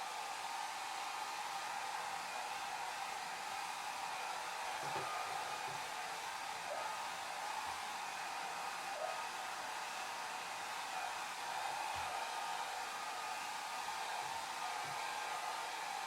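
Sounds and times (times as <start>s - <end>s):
hair dryer blowing: 0.0s - 16.0s.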